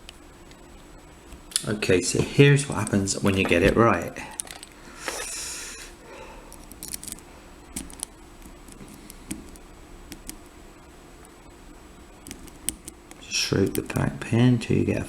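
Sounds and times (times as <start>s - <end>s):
lock pick scraping and clicking: 6.5s - 7.2s.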